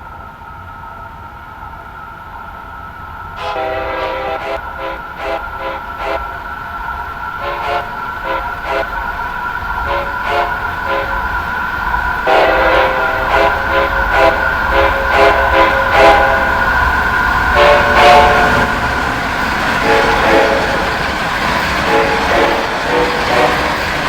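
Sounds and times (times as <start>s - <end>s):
train rumble: 0.0s - 24.0s
locomotive horn blasts: 3.4s - 6.4s, 7.4s - 9.1s, 9.8s - 11.5s, 12.2s - 24.0s.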